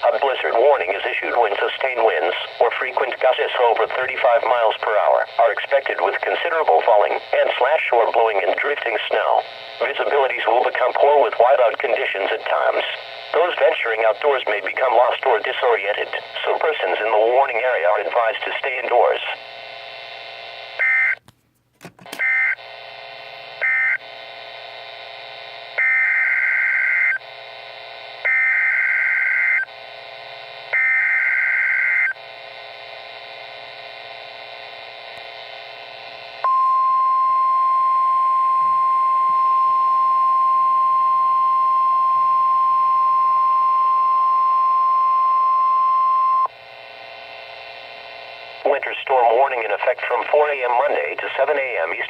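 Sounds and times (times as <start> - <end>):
faint radio hiss: 0.0 - 19.7, 46.7 - 52.0
steady warning alarm tone: 0.0 - 21.2, 22.1 - 52.0.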